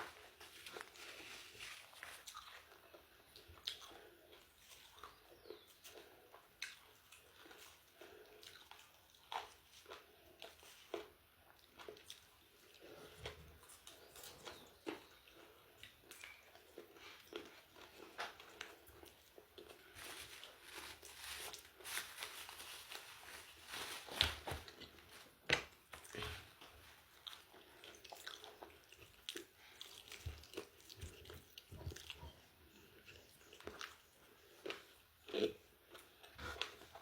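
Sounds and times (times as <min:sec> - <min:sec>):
person chewing crunchy food: 0:00.0 - 0:37.0.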